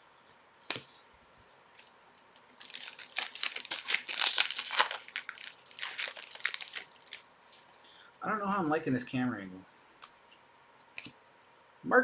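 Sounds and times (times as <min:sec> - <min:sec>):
foil wrapper tearing and crinkling: 0:02.4 - 0:07.2.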